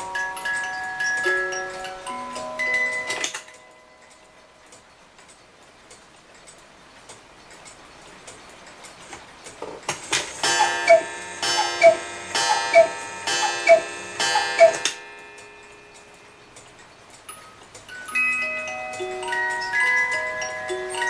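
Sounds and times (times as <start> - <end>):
cuckoo clock ticking: 0.0 - 21.0
cuckoo call: 10.4 - 14.9.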